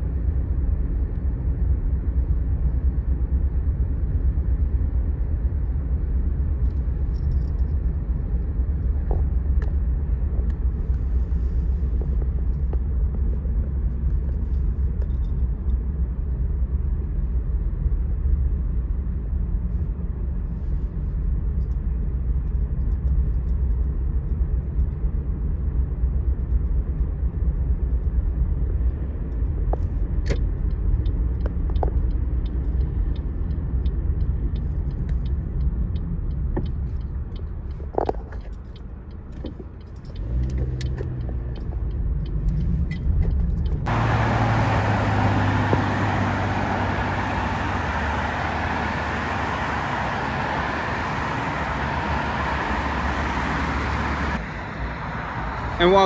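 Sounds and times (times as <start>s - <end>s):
low road rumble: 0.0s - 56.0s.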